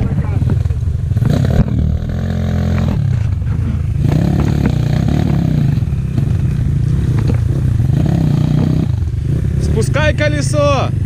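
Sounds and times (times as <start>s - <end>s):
dirt bike engine revving: 0.0s - 11.0s.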